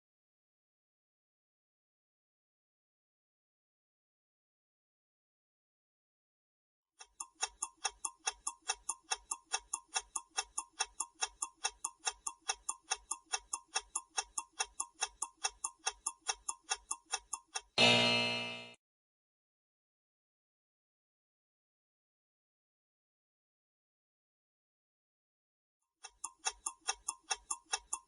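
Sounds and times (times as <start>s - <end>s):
clock ticking: 7.0s - 18.8s, 26.0s - 28.0s
time-up sound: 17.8s - 18.8s.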